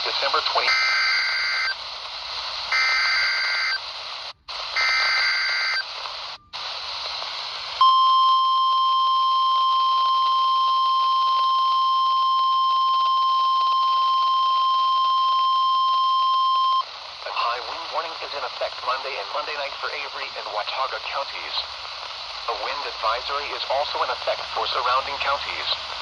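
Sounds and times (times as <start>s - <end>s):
radio static: 0.0s - 7.9s, 9.6s - 26.0s
steady warning alarm tone: 0.7s - 1.8s, 2.7s - 3.8s, 4.8s - 5.9s.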